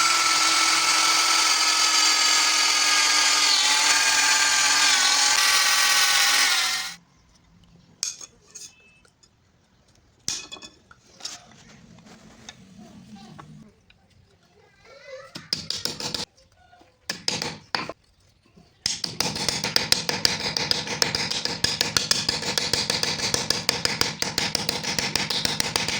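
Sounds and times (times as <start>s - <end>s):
electric drill whining: 0.0s - 7.0s.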